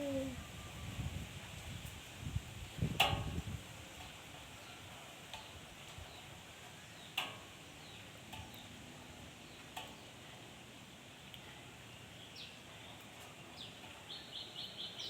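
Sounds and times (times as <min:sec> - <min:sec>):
faint background noise: 0:00.0 - 0:15.0.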